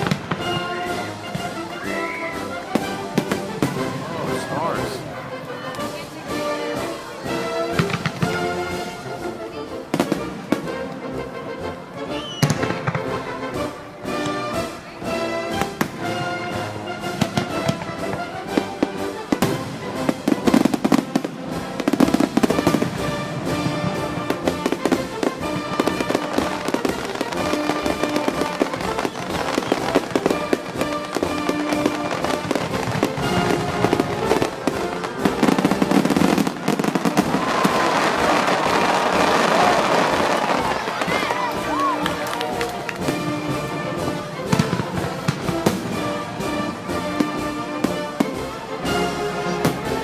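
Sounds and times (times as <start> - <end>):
fireworks bangs and crackles: 0.0 - 9.2, 9.8 - 11.0, 12.2 - 14.8, 15.4 - 50.0
music with long held notes: 0.0 - 50.0.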